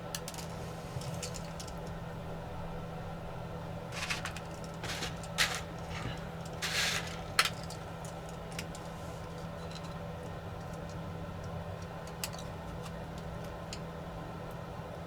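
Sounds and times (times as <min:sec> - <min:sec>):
steady low hum: 0:00.0 - 0:15.0
tools scraping and clicking plastic: 0:03.9 - 0:08.9.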